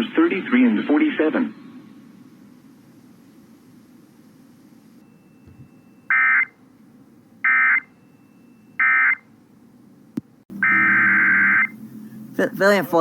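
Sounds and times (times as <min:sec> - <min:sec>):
warbling data tones: 0:10.5 - 0:11.8.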